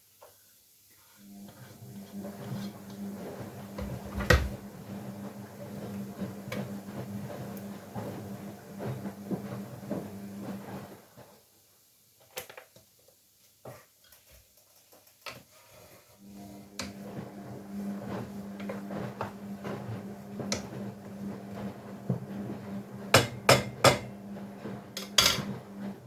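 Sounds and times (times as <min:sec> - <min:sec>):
washing machine humming: 0:01.2 - 0:11.4, 0:16.2 - 0:26.0
kitchenware clicks and clatter: 0:25.0 - 0:25.6.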